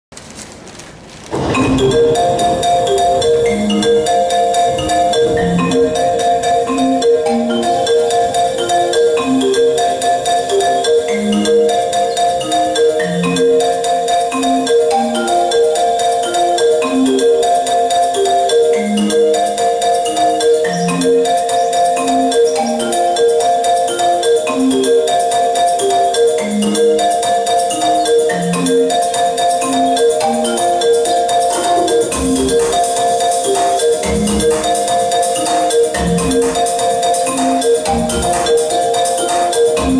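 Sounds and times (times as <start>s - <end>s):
slow low notes: 1.3s - 8.7s
quick repeated high notes: 1.4s - 39.9s.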